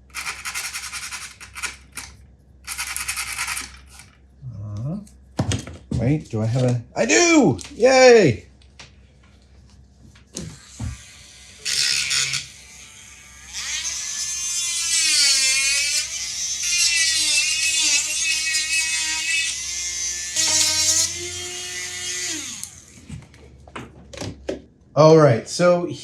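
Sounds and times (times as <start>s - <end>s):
electric sander motor whining: 19.6s - 23.1s.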